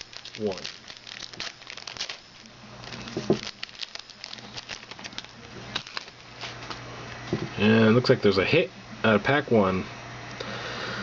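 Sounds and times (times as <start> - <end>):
wrapper tearing and crinkling: 0.0 - 6.8.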